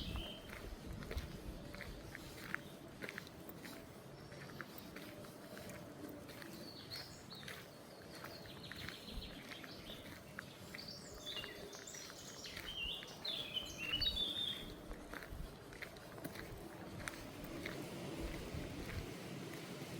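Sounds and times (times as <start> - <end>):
footsteps on a path: 0.0 - 19.9
songbird singing: 0.0 - 19.9.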